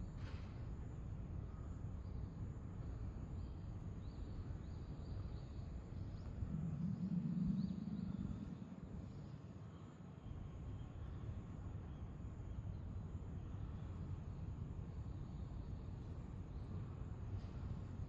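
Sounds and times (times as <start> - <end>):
low outdoor rumble: 5.8 - 9.8
low hum: 6.0 - 9.8.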